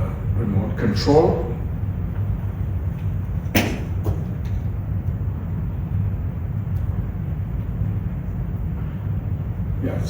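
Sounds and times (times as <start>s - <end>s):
low room noise rumble: 0.0s - 10.0s
sharp knock: 3.6s - 4.2s.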